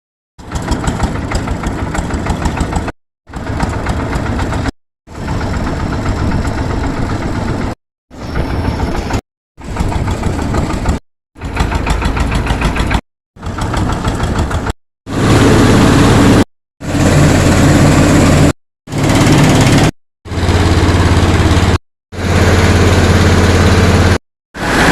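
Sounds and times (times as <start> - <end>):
rice mill engine running: 0.4 - 24.9.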